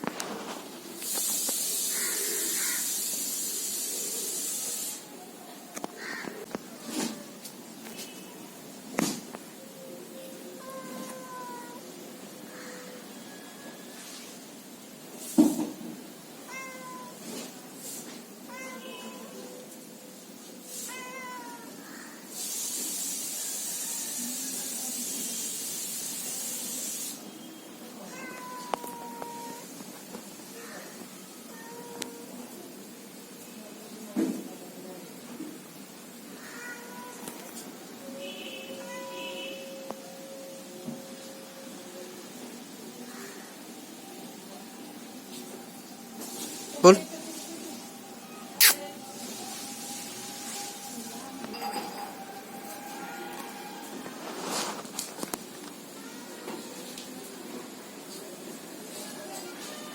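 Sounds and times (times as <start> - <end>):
cat hissing: 1.1 - 5.1, 48.6 - 49.0
cat meowing: 10.6 - 11.9, 16.5 - 17.3, 18.5 - 19.5, 20.8 - 22.1, 28.0 - 29.7, 30.6 - 32.4, 36.4 - 37.6, 38.8 - 39.8.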